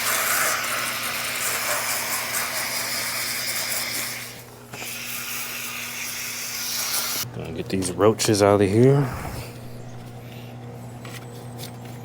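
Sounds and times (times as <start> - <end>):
hose spraying water on metal: 0.0 - 7.2
faint low hum: 7.3 - 11.7.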